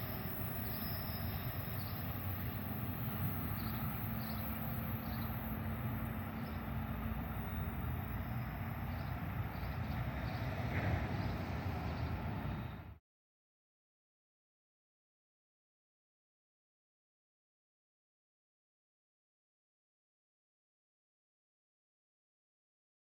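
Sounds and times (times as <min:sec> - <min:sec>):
train rumbling: 0:00.0 - 0:13.0.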